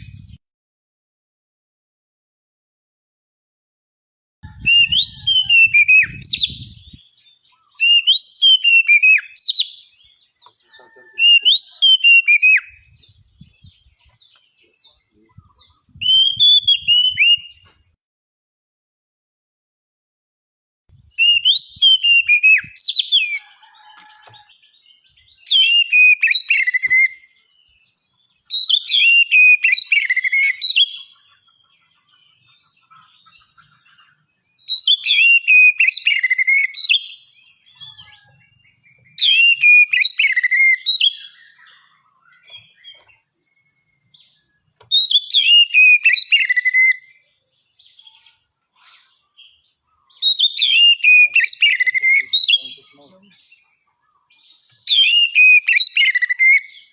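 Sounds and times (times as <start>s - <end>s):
bird singing whistled phrases: 4.5s - 9.9s, 11.1s - 14.1s, 15.2s - 17.6s, 21.2s - 24.3s, 25.4s - 27.4s, 28.5s - 31.2s, 34.6s - 38.5s, 39.1s - 43.1s, 44.9s - 47.3s, 47.9s - 53.4s, 54.8s - 56.9s.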